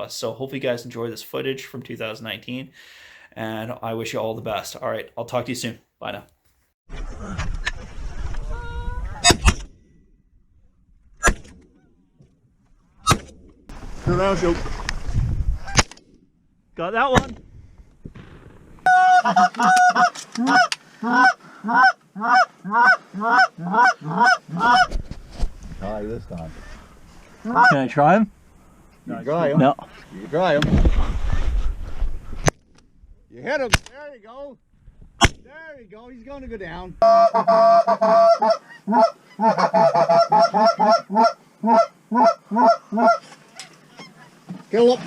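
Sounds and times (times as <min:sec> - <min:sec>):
goose honking: 0:18.9 - 0:24.9, 0:26.5 - 0:27.9, 0:37.0 - 0:44.4.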